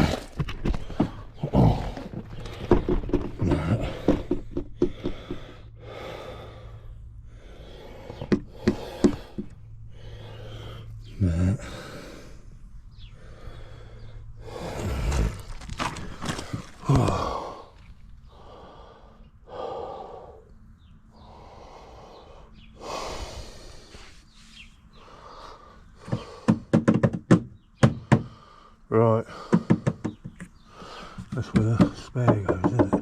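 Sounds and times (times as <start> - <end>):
man breathing hard and grunting: 0.0 - 20.5, 21.2 - 24.2, 27.9 - 31.4
sharp metallic knocks and clicks: 26.1 - 28.3, 29.5 - 30.6, 31.2 - 33.0.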